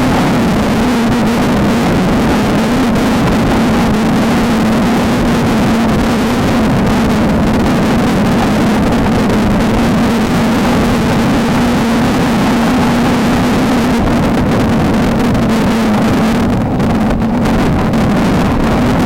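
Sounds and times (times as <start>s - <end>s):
race car engine at high revs: 0.0s - 19.0s
tyre and chassis noise: 0.0s - 19.0s
wind rush: 0.0s - 19.0s.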